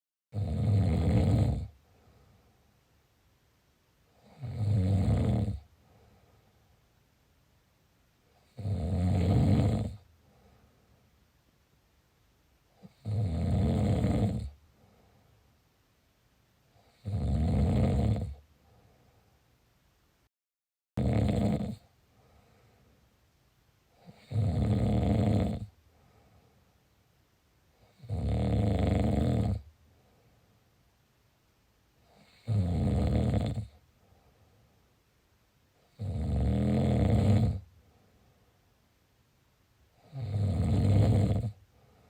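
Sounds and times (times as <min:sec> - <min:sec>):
loud snoring: 0:00.3 - 0:01.8, 0:04.2 - 0:05.7, 0:08.4 - 0:10.0, 0:12.8 - 0:14.6, 0:16.8 - 0:18.4, 0:21.0 - 0:21.9, 0:24.0 - 0:25.8, 0:27.8 - 0:29.7, 0:32.1 - 0:33.8, 0:35.8 - 0:37.7, 0:40.0 - 0:41.6
faint breathing: 0:01.7 - 0:02.9, 0:05.7 - 0:06.9, 0:10.0 - 0:11.3, 0:14.6 - 0:15.6, 0:18.5 - 0:19.6, 0:22.0 - 0:23.2, 0:25.8 - 0:27.1, 0:29.8 - 0:30.8, 0:33.8 - 0:35.0, 0:37.7 - 0:38.7, 0:41.5 - 0:42.0.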